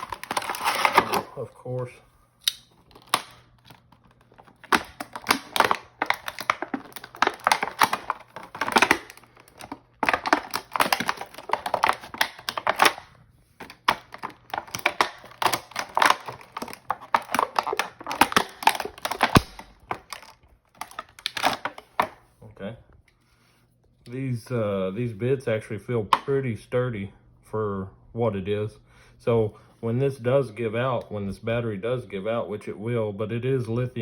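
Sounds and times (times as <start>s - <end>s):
plastic packaging crinkling: 0.0s - 1.8s, 2.4s - 22.2s.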